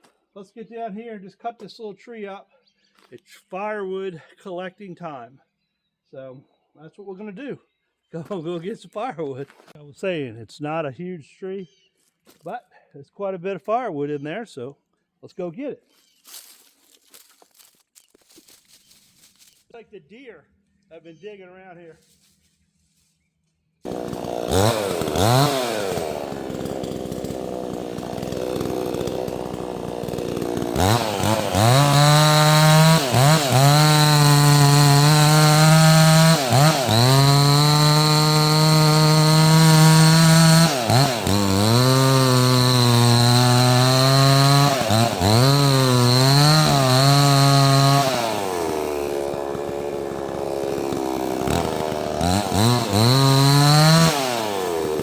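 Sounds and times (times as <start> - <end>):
chainsaw revving and cutting wood: 23.8 - 55.0.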